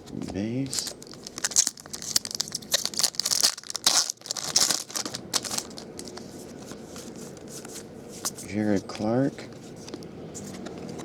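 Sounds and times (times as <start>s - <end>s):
foil wrapper crinkling and tearing: 0.7s - 6.3s.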